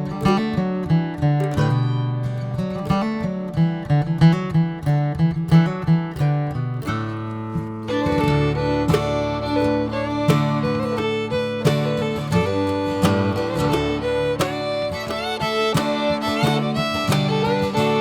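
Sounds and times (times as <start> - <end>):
strummed acoustic guitar: 0.0 - 18.0
fiddle melody: 7.4 - 18.0.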